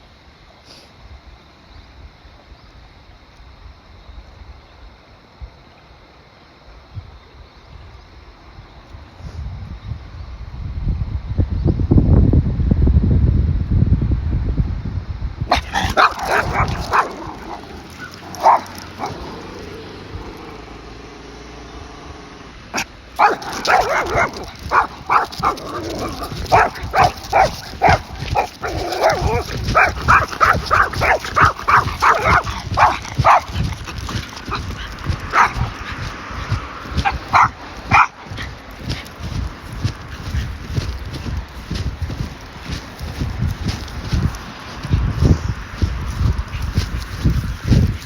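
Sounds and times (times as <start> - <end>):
wind buffeting microphone: 6.9 - 48.0
person walking footsteps: 15.6 - 20.6, 22.8 - 48.0
dog breathing: 23.2 - 44.5.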